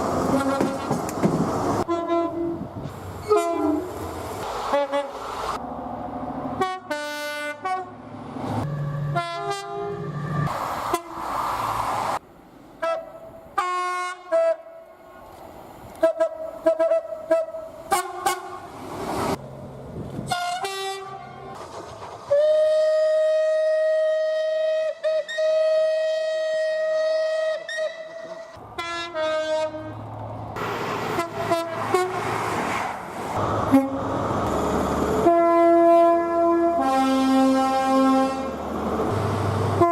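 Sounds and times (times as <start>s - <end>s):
passing train rushing: 0.0s - 24.6s, 27.6s - 39.9s
train horn blasts: 0.3s - 0.8s, 1.9s - 2.6s, 3.2s - 3.9s, 6.6s - 8.0s, 9.0s - 10.2s, 12.8s - 14.8s, 16.0s - 18.6s, 20.3s - 21.6s, 22.3s - 30.0s, 31.2s - 32.2s, 33.7s - 34.0s, 35.2s - 38.6s.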